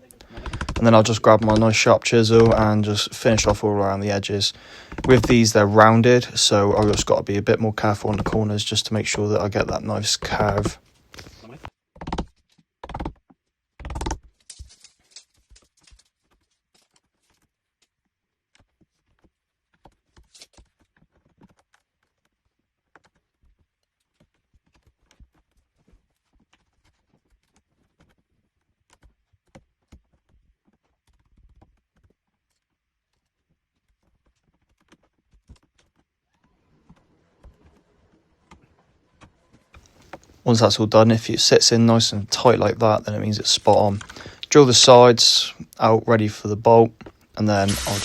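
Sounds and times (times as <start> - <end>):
chisel clicks and scrapes: 0.2 - 3.6.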